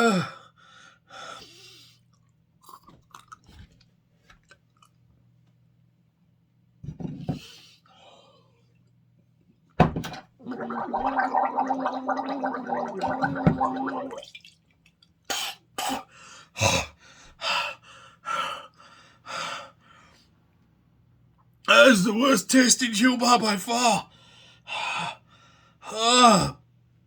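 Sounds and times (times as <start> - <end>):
man gargling: 10.4 - 14.2.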